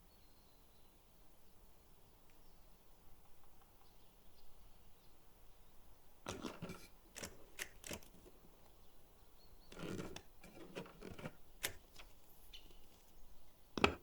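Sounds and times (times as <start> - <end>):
tape recorder clicking and clunking: 6.3 - 8.4, 9.7 - 12.2, 13.8 - 14.0.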